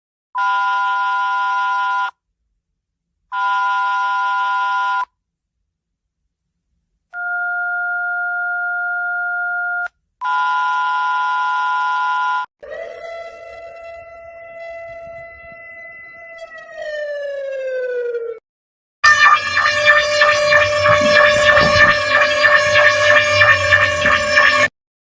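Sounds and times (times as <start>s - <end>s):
electronic alarm tones: 19.0s - 24.7s
upward gliding tone: 19.1s - 24.7s.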